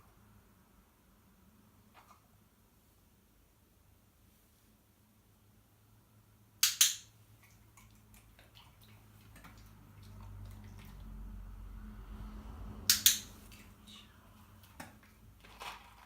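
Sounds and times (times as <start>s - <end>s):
low rumble: 10.4s - 14.3s.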